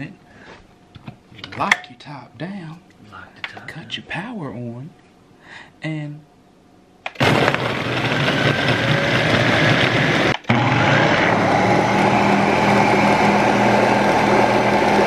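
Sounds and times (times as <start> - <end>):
blender running: 7.1 - 15.0.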